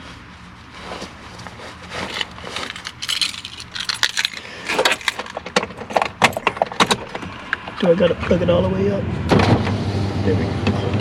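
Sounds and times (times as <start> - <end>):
clicks and rattles of hard parts: 2.0 - 7.7.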